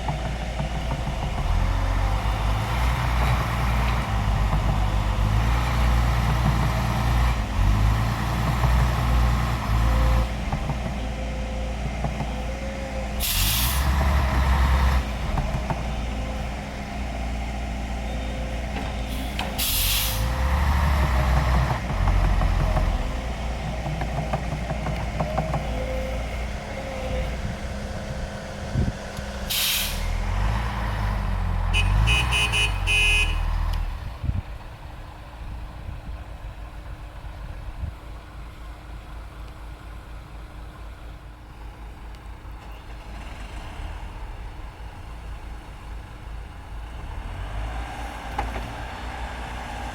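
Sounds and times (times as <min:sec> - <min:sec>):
heavy diesel engines labouring: 0:00.0 - 0:49.9
air brake hisses: 0:13.2 - 0:14.0, 0:19.1 - 0:20.4, 0:29.5 - 0:30.3.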